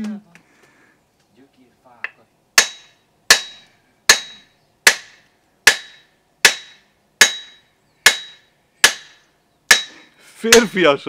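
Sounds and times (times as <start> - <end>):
hammer striking axe head: 2.6 - 10.7.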